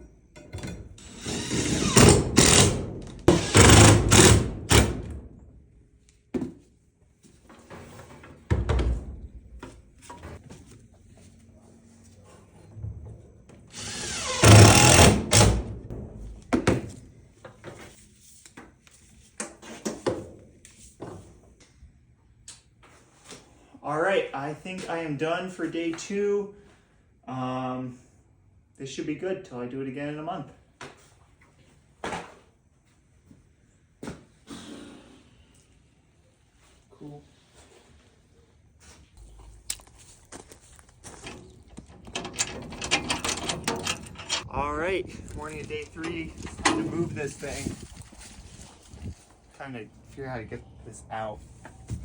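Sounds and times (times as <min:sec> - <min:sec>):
power tool stopping: 0:01.0 - 0:04.4, 0:13.8 - 0:15.5
sharp clicks and knocks: 0:41.0 - 0:44.6, 0:45.2 - 0:47.3.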